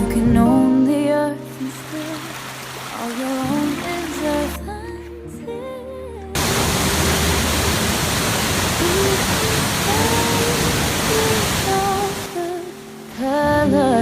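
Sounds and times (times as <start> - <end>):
soft background music: 0.0 - 6.4, 8.8 - 14.0
waterfall rushing: 1.6 - 4.6, 6.4 - 13.2.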